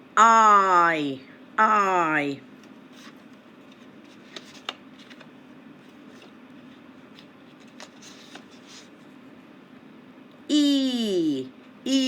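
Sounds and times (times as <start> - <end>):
soft paper rustles: 2.6 - 9.3.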